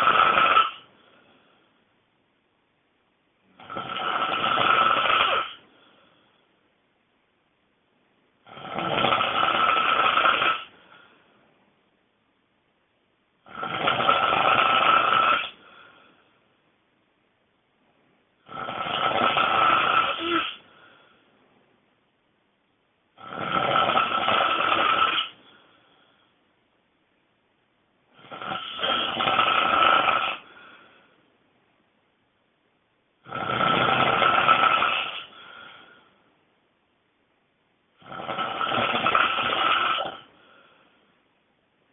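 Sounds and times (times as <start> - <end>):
person snoring loudly: 0.0 - 0.9, 3.5 - 5.6, 8.4 - 10.7, 13.4 - 15.6, 18.4 - 20.6, 23.2 - 25.4, 28.1 - 30.8, 33.2 - 35.9, 38.0 - 40.3.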